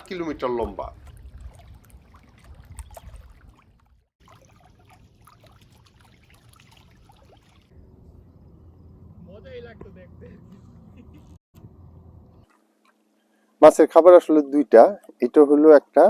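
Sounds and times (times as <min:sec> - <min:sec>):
water lapping and trickling: 0:00.0 - 0:07.8, 0:12.4 - 0:13.6, 0:14.6 - 0:16.0.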